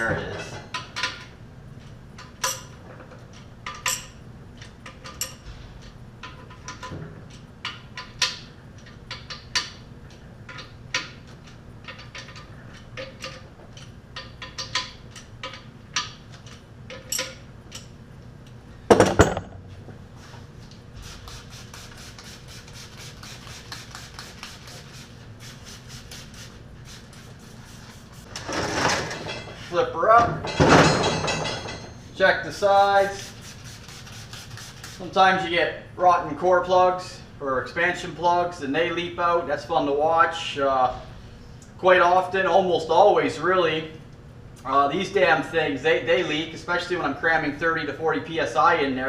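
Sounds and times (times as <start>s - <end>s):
metal tools clinking on engine block: 2.2s - 5.5s, 10.5s - 18.0s, 30.4s - 32.2s.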